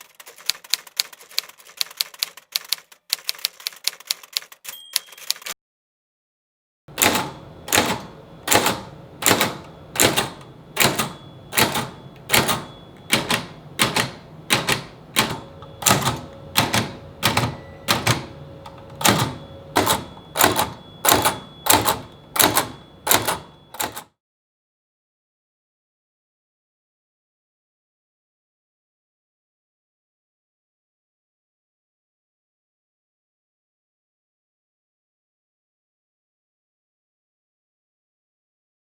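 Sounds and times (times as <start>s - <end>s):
typewriter keystrokes: 0.0s - 5.6s, 6.9s - 24.1s
typewriter strike ring: 4.6s - 5.6s, 6.9s - 24.1s.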